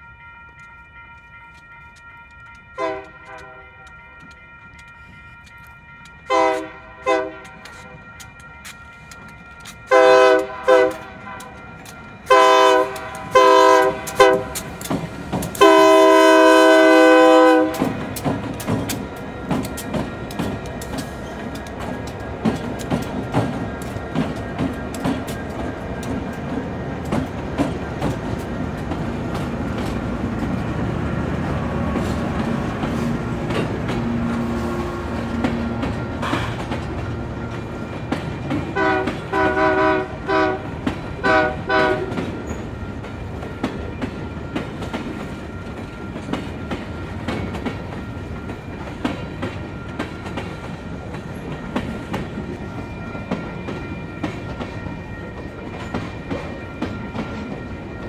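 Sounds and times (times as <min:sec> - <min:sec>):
locomotive horn blasts: 0:02.7 - 0:03.9, 0:06.2 - 0:07.7, 0:09.9 - 0:11.6, 0:12.2 - 0:14.8, 0:15.6 - 0:18.2, 0:38.7 - 0:42.3
train wheels clicking over rail joints: 0:07.4 - 0:58.0.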